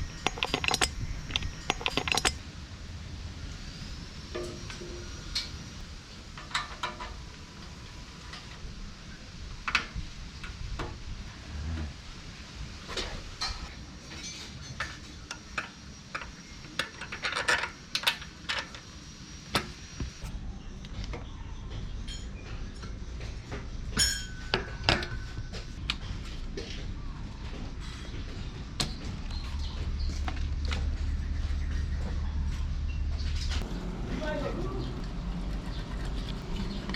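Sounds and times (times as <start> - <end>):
metallic clinks of hand tools: 0.0 - 2.4.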